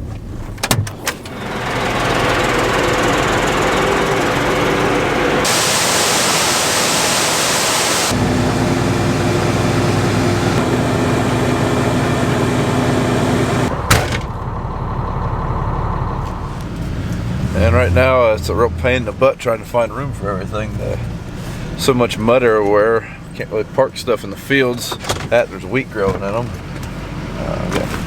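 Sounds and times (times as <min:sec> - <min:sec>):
diesel truck engine running: 0:01.0 - 0:28.0
air hissing: 0:01.2 - 0:08.2
sharp bang: 0:13.8 - 0:14.4.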